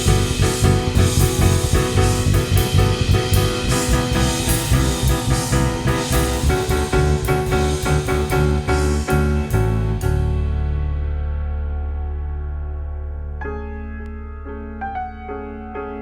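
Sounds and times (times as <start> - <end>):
jazz piano trio playing: 0.0 - 11.8.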